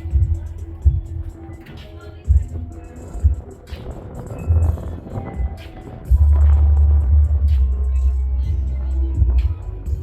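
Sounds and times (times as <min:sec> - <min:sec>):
deep bass: 0:00.0 - 0:01.6, 0:02.2 - 0:10.0
background music: 0:00.0 - 0:10.0.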